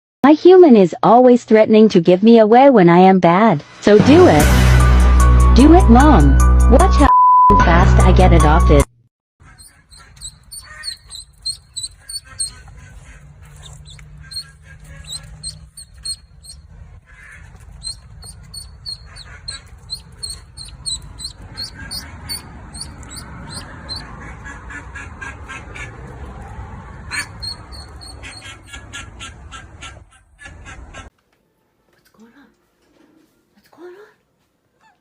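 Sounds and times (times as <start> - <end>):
birds chirping: 9.4 - 31.1.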